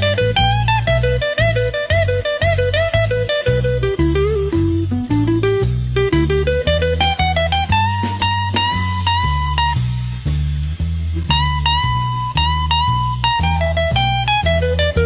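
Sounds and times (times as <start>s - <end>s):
blues guitar melody: 0.0s - 15.0s
steady beat: 0.0s - 15.0s
walking bass: 0.0s - 15.0s.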